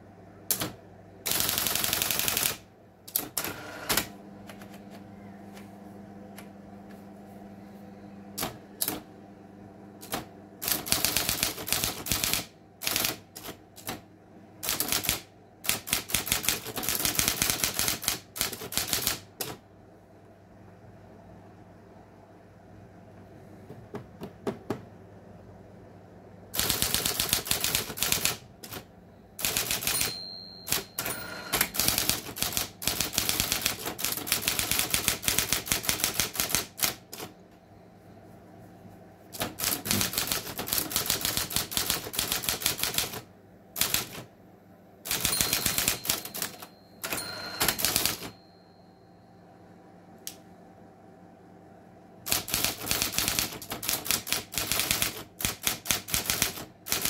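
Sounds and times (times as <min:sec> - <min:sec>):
typewriter keystrokes: 0:00.5 - 0:04.1, 0:08.4 - 0:09.0, 0:10.0 - 0:14.0, 0:14.6 - 0:19.6, 0:26.6 - 0:37.3, 0:39.4 - 0:44.3, 0:45.1 - 0:48.4, 0:52.3 - 0:57.0
typewriter motor humming: 0:00.5 - 0:04.6, 0:08.4 - 0:09.1, 0:10.0 - 0:14.0, 0:14.6 - 0:19.6, 0:26.6 - 0:37.3, 0:39.4 - 0:44.3, 0:45.1 - 0:48.3, 0:52.3 - 0:57.0.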